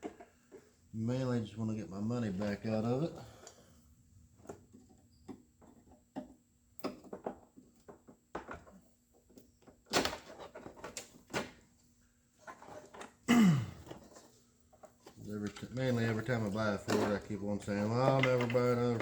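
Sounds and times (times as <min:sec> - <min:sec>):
plastic parts clicking and knocking: 0:00.0 - 0:00.8, 0:04.4 - 0:11.8, 0:12.4 - 0:19.0.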